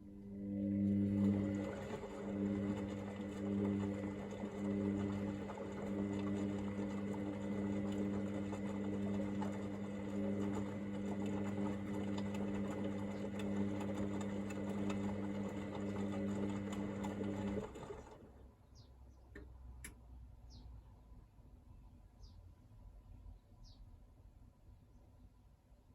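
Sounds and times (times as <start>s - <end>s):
washing machine electrical hum: 0.0s - 18.6s.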